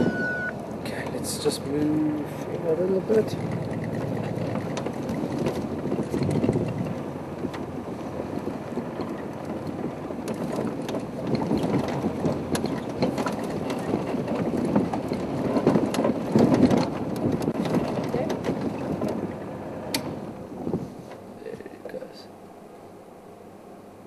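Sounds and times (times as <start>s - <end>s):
wind buffeting microphone: 0.0s - 21.4s
vehicle engine running: 0.0s - 24.0s
clicks and rattles: 9.0s - 19.2s.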